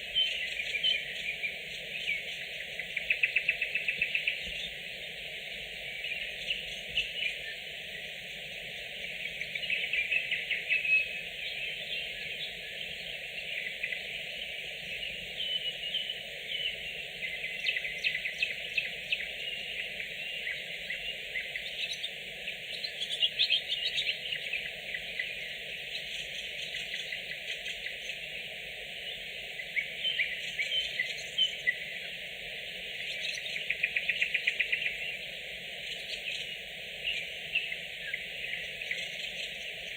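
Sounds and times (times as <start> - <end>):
background hiss: 0.0 - 39.9
nightingale singing: 0.0 - 39.9.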